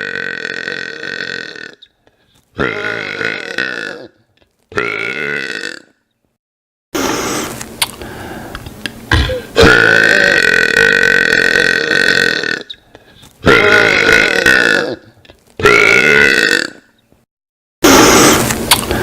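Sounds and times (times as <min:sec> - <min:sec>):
man burping loudly: 0:00.0 - 0:01.9, 0:02.6 - 0:06.0, 0:09.1 - 0:12.8, 0:13.4 - 0:16.9.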